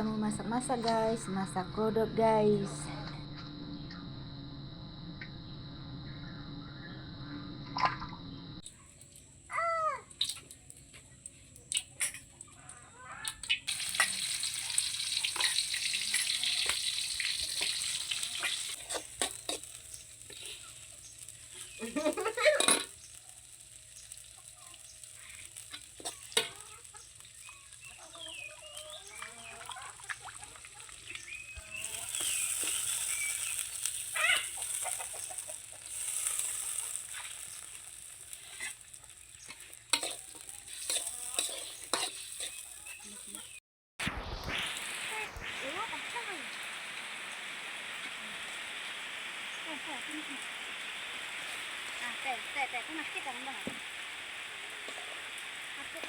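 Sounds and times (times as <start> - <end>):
meat sizzling in hot oil: 13.4 - 56.0
chicken clucking: 26.1 - 32.9, 34.2 - 35.9.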